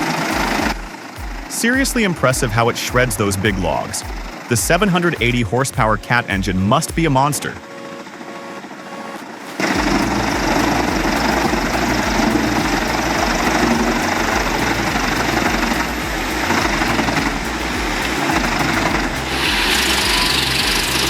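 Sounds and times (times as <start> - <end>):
heavy diesel engine rumble: 9.6 - 21.0.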